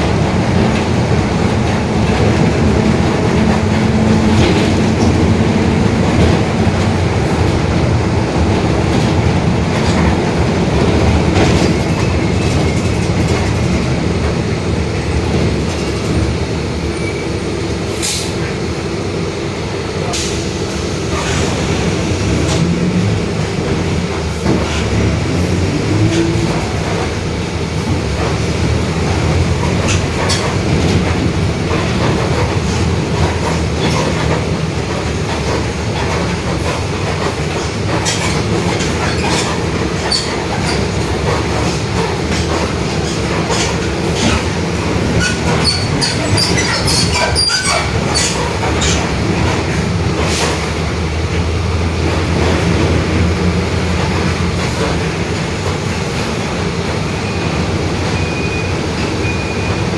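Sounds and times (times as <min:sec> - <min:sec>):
bus diesel engine droning: 0:00.0 - 0:59.9
growling differential: 0:21.4 - 0:34.6.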